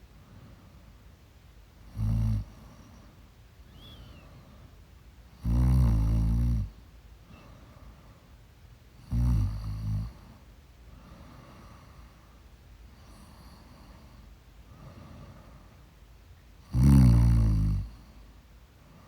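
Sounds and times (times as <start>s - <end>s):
person snoring: 1.9s - 2.6s, 5.4s - 6.7s, 9.1s - 10.1s, 16.7s - 18.0s.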